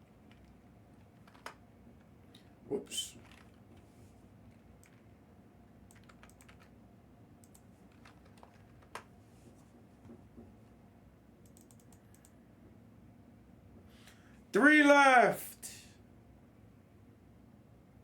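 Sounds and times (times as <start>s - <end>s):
keyboard typing clicks: 1.2s - 1.6s, 4.8s - 5.0s, 5.9s - 6.7s, 7.4s - 9.1s, 11.4s - 12.4s.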